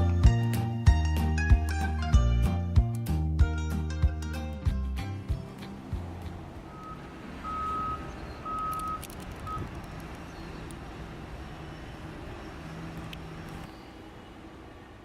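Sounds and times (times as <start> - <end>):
reversing alarm beeping: 6.7 - 9.6.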